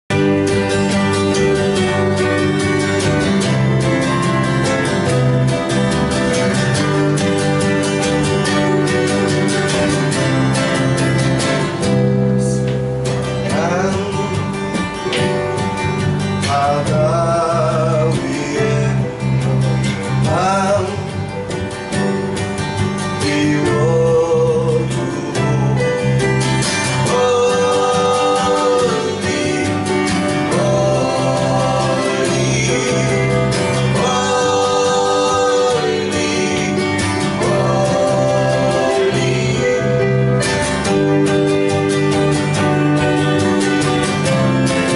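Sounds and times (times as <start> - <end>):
guitar accompaniment: 0.0 - 44.9
person singing: 12.3 - 14.8, 16.4 - 19.4, 20.2 - 21.4, 23.1 - 41.3.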